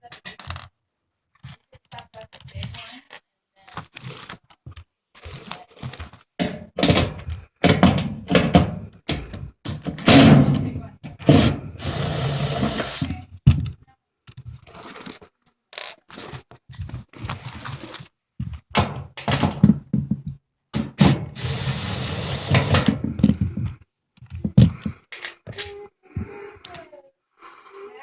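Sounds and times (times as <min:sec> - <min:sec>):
sheet metal thunks and knocks: 0:06.4 - 0:11.7
power drill running: 0:11.2 - 0:13.1, 0:20.8 - 0:23.0.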